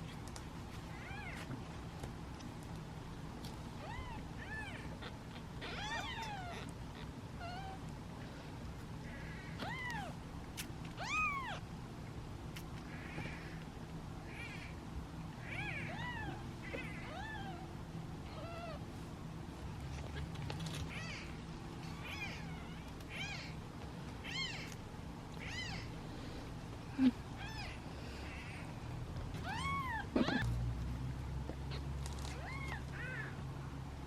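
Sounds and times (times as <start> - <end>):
kittens mewing: 3.8 - 7.9, 9.0 - 10.2, 10.9 - 11.6, 14.2 - 17.7, 19.8 - 23.6, 24.2 - 24.8, 25.4 - 26.0, 26.9 - 30.5.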